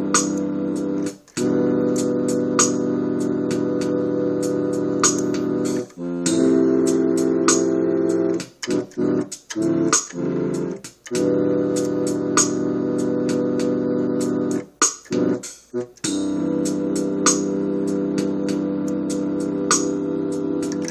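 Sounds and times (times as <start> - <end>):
keyboard piano chords: 0.0 - 20.9.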